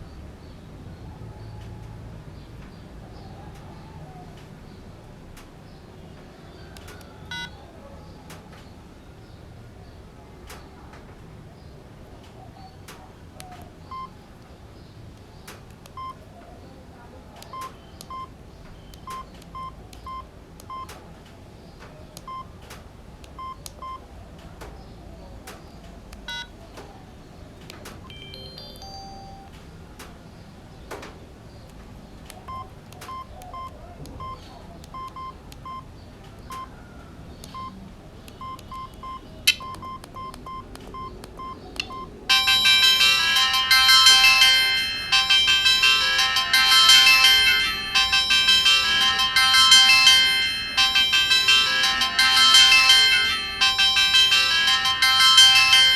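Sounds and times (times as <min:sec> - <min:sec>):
phone keypad beeps: 0:06.8 - 0:07.6, 0:13.4 - 0:14.2, 0:15.8 - 0:16.3, 0:17.4 - 0:21.0, 0:22.2 - 0:22.5, 0:23.2 - 0:24.1, 0:26.3 - 0:26.6, 0:28.0 - 0:29.6, 0:32.3 - 0:36.7, 0:37.4 - 0:55.9.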